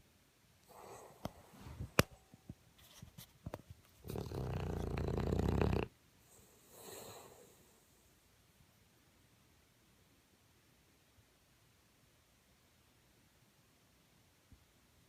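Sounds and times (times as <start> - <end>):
pet snoring: 4.0 - 5.9.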